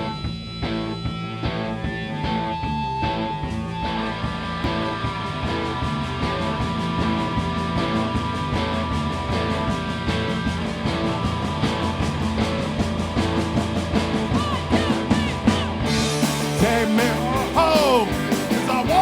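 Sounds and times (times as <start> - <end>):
bass guitar: 0.0 - 19.0
electric guitar: 0.0 - 19.0
steady drum beat: 4.4 - 19.0.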